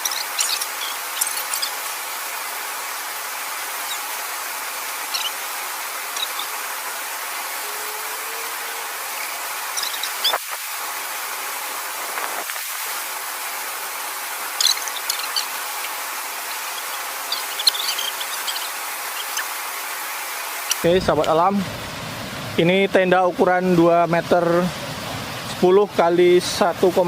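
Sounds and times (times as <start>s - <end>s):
high squeaky chirps: 0.0s - 1.8s, 5.0s - 5.4s, 6.1s - 6.6s, 9.1s - 10.4s, 14.5s - 16.0s, 16.6s - 19.6s
water rushing through a weir: 0.0s - 27.0s.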